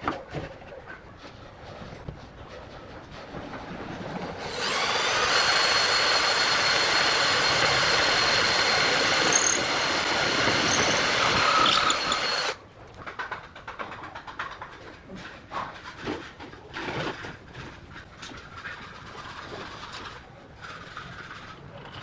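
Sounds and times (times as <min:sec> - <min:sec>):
power tool high whine: 0:04.4 - 0:12.6.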